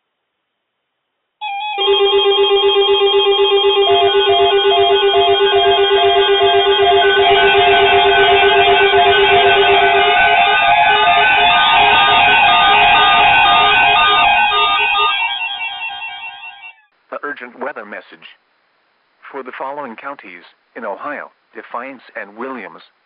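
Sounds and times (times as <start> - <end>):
pulsing electronic alarm beeps: 1.4 - 16.8
low steady alarm tone: 1.4 - 16.9.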